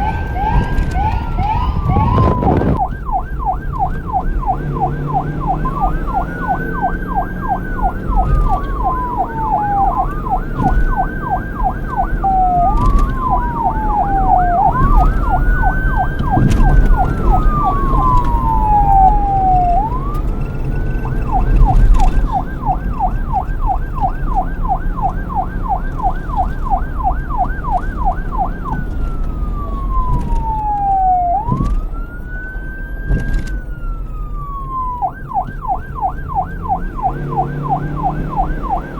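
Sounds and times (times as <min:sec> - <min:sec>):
low rumble: 0:00.0 - 0:23.7
police siren wail and yelp: 0:00.0 - 0:38.9.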